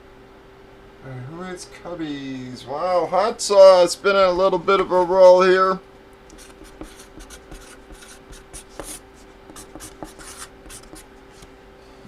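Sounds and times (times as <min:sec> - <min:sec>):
faint steady hum: 0:00.0 - 0:12.0
hands scratching and tapping tabletop: 0:06.3 - 0:11.0.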